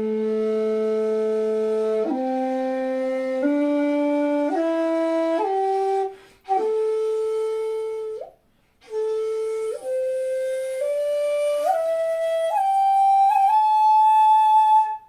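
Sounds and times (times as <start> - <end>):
shakuhachi flute playing a scale: 0.0 - 15.0
short breath: 6.1 - 6.5, 8.4 - 8.8.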